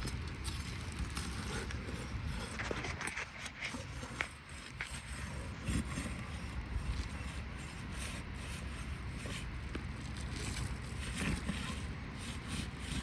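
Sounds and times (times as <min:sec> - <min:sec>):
roof shingles being scraped: 0:00.0 - 0:13.0
steady low rumble: 0:00.0 - 0:13.0.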